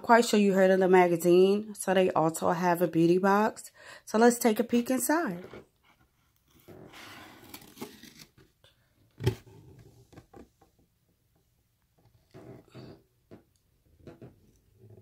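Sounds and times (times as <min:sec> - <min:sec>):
paper packaging tearing: 0:07.0 - 0:08.4
packaging rustling: 0:07.2 - 0:08.5.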